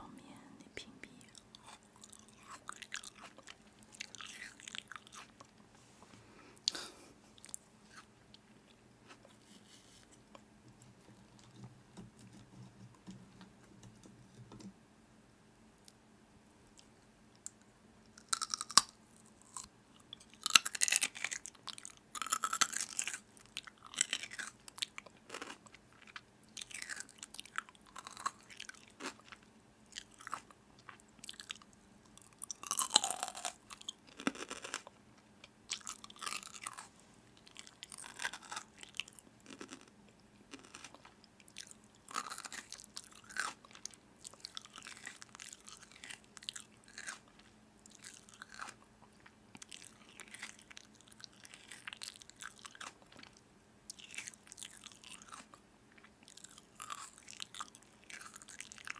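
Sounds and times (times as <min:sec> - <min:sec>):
crunching and crackling: 0:18.2 - 0:19.6, 0:20.2 - 0:34.9, 0:35.7 - 0:39.9, 0:40.5 - 0:48.8, 0:49.6 - 0:58.9.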